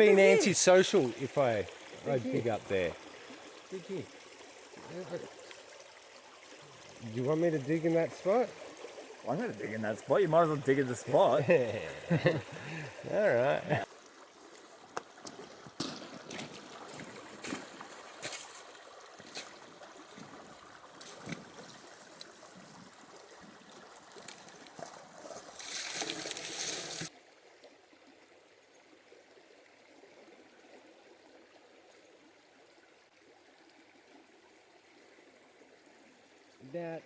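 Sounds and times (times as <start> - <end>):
rushing wash of water: 0.0 - 13.9
creek water flowing: 0.0 - 37.0.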